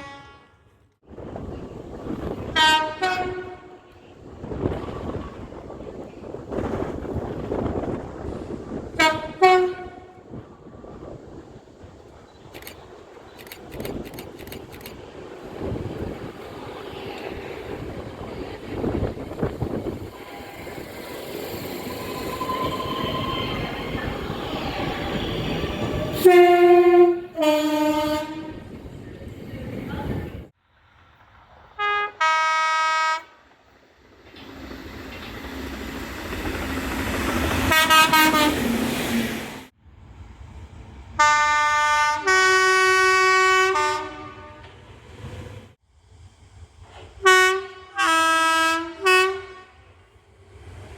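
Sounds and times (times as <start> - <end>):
train horn: 0.0 - 0.8, 2.6 - 4.0, 9.0 - 10.3, 24.9 - 28.8, 31.8 - 33.4, 37.7 - 38.7, 41.2 - 44.8, 47.2 - 50.0
train rumbling on track: 0.0 - 50.9.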